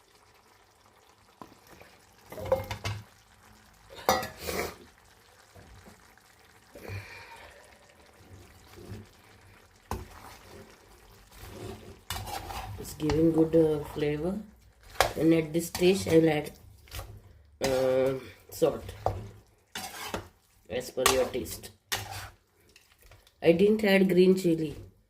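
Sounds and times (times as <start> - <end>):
spoon scraping a pan: 4.0 - 4.9, 8.1 - 23.3.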